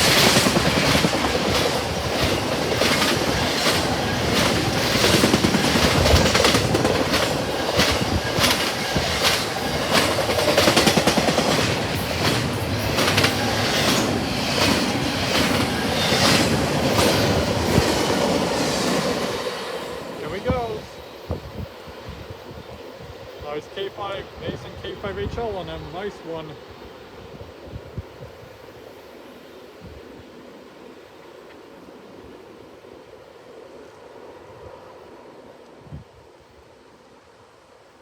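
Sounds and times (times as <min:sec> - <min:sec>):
train wheels clacking over rail joints: 0:00.0 - 0:19.2
freight train rumbling past: 0:00.0 - 0:36.6.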